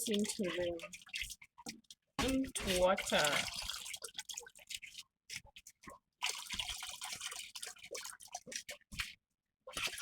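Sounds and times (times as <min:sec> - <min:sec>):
liquid pouring into water: 0:00.0 - 0:10.0.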